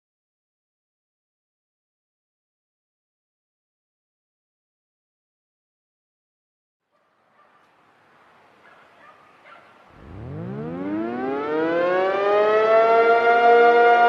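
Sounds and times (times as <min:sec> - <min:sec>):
warning siren winding up: 0:10.0 - 0:14.0.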